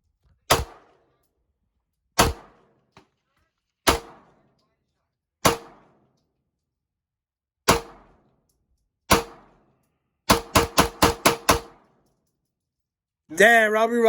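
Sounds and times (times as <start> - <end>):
pistol shots with ringing echo: 0.5 - 1.2, 2.2 - 2.9, 3.8 - 4.6, 5.4 - 6.1, 7.7 - 8.3, 9.1 - 12.0.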